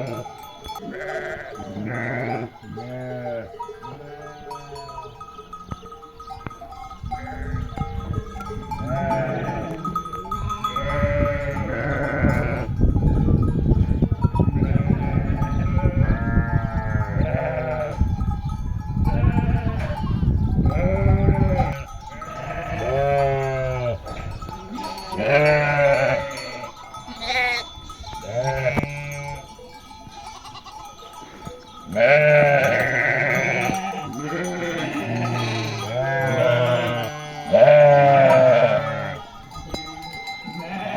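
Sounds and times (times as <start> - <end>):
sheep bleating: 0.0 - 5.1, 8.8 - 12.7, 14.6 - 18.0, 19.1 - 29.5, 30.1 - 30.9, 31.9 - 40.9.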